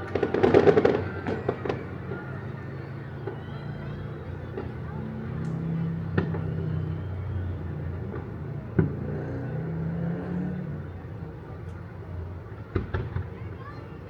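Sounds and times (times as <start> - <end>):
firework bangs: 0.0 - 2.1.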